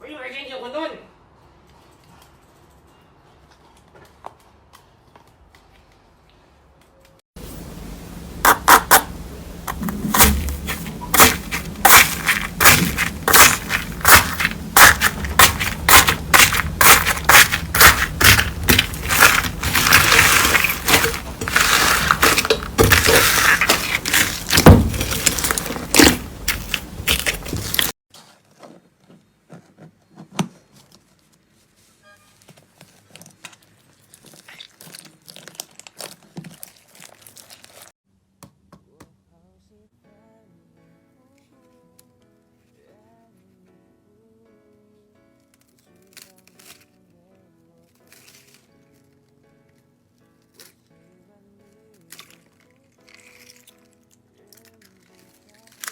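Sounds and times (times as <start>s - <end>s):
slime crackling and popping: 9.7s - 27.9s, 34.1s - 37.9s, 54.6s - 55.9s.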